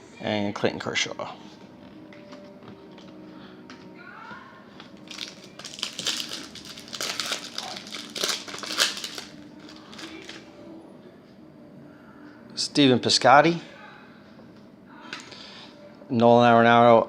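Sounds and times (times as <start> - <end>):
foil wrapper crinkling: 4.9 - 10.4.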